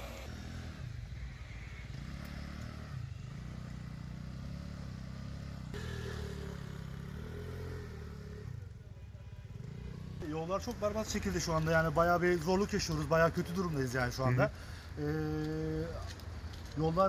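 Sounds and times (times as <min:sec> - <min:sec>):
steady engine tone: 0:00.0 - 0:10.2
vehicle engines in slow traffic: 0:00.0 - 0:17.0.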